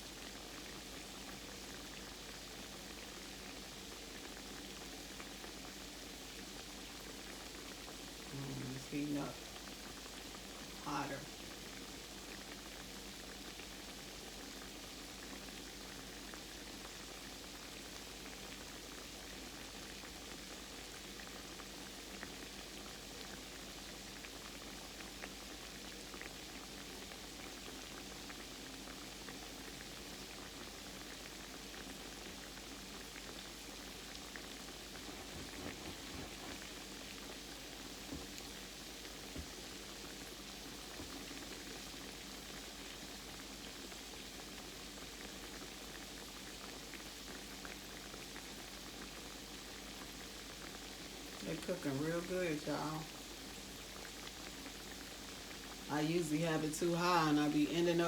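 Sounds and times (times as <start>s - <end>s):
food frying in hot oil: 0.0s - 58.0s
oil popping: 34.4s - 40.2s.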